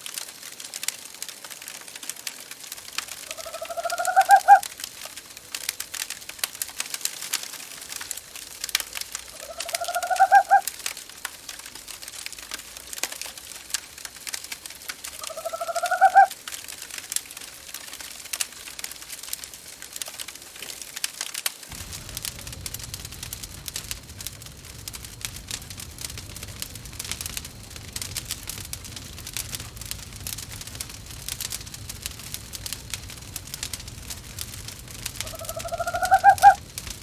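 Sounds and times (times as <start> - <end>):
wood fire crackling: 0.0 - 37.0
owl hooting: 3.3 - 4.7, 9.4 - 10.7, 15.2 - 16.3, 35.2 - 36.7
low rumble: 21.7 - 37.0.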